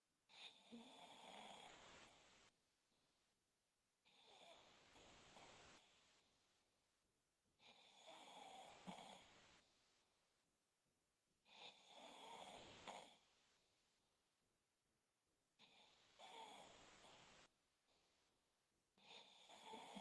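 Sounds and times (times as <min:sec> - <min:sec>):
man snoring: 0:19.1 - 0:20.0.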